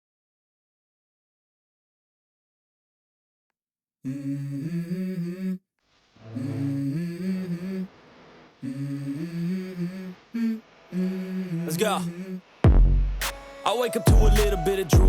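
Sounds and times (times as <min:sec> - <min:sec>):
pop hip-hop song intro: 0:13.2 - 0:15.0
voice humming: 0:13.5 - 0:15.0.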